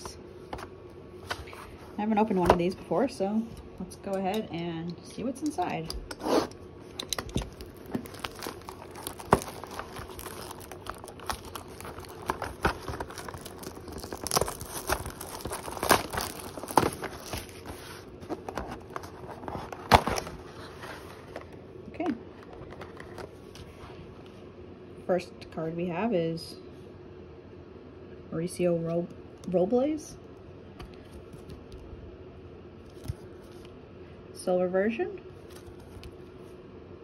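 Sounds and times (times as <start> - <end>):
card pack wrapper tearing and crinkling: 7.2 - 21.0.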